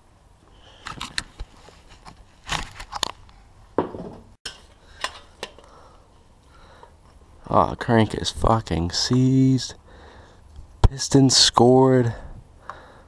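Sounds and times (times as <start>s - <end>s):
metal engine parts clinking: 4.5s - 5.8s.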